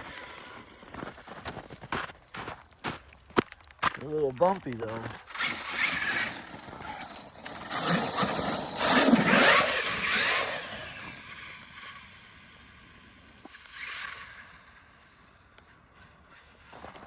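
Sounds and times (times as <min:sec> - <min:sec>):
rc truck motor whine: 0:00.0 - 0:01.8, 0:05.1 - 0:17.0
tyre noise on bumpy ground: 0:00.0 - 0:09.6.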